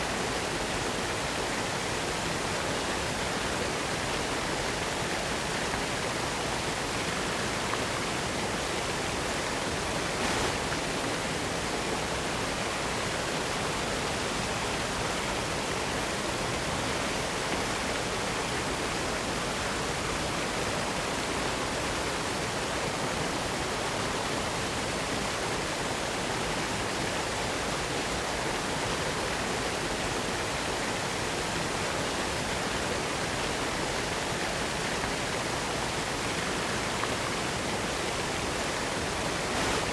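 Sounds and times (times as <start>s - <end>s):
waterfall rushing: 10.0s - 11.6s, 38.2s - 39.9s.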